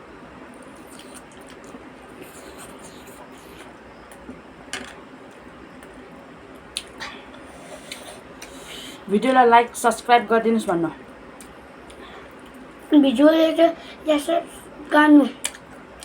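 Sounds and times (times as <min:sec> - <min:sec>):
person chewing food: 0:00.5 - 0:04.3.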